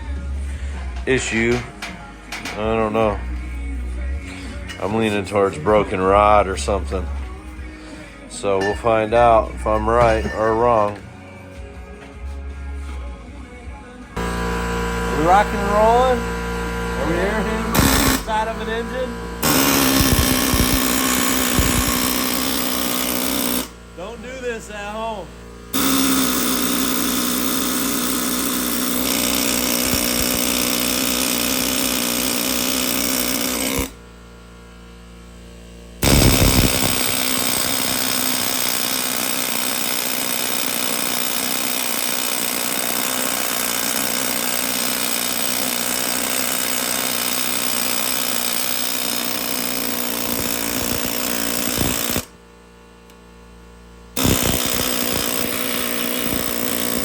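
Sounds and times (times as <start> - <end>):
handheld power tool running: 14.2 - 34.1, 35.0 - 52.4, 54.1 - 57.0.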